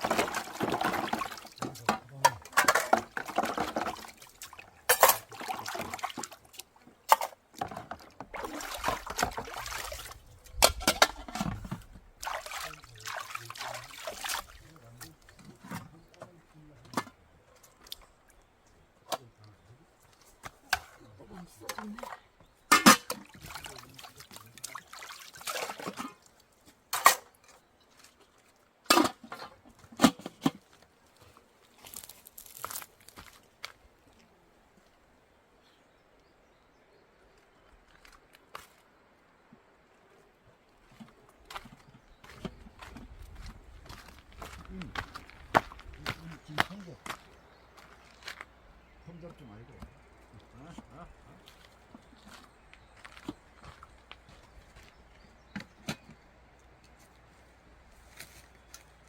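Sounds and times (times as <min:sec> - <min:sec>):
liquid pouring and splashing: 0:00.0 - 0:01.9, 0:02.6 - 0:06.4, 0:08.0 - 0:10.2, 0:12.2 - 0:14.7, 0:23.1 - 0:26.2
water splashing and trickling: 0:00.0 - 0:59.0.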